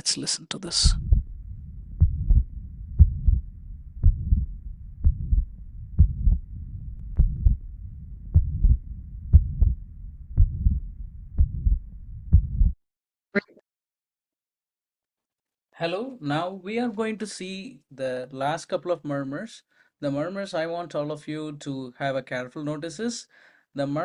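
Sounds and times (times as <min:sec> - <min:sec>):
heartbeat thuds: 0:00.8 - 0:12.8
low rushing heart murmur: 0:00.8 - 0:12.8.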